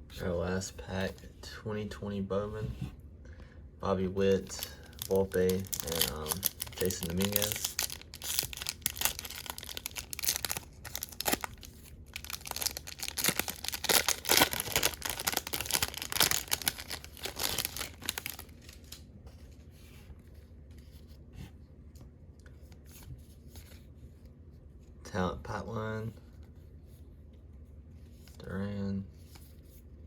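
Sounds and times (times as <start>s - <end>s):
card pack wrapper tearing: 4.4s - 19.0s
cards being handled: 4.4s - 19.5s.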